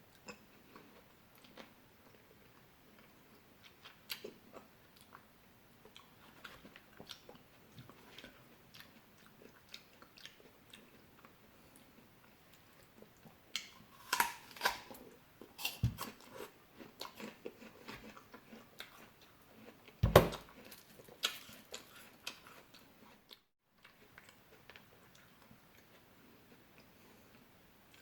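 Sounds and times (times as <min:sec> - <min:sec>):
person chewing fruit: 0:00.1 - 0:28.0
sharp bites into fruit: 0:13.9 - 0:15.0.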